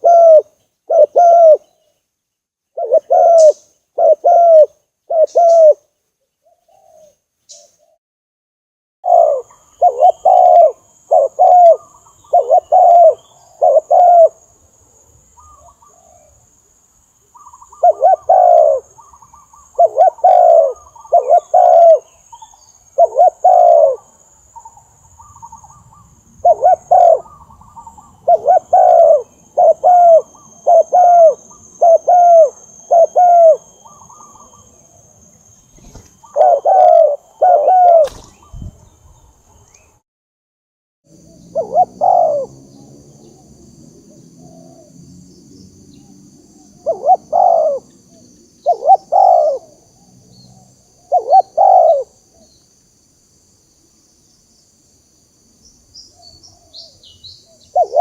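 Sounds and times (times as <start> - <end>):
dove cooing: 0.0 - 1.8, 2.8 - 7.2, 9.0 - 14.4, 15.4 - 16.4, 17.4 - 24.2, 25.2 - 34.9, 35.7 - 38.8, 41.2 - 45.0, 46.0 - 52.5, 56.2 - 58.0.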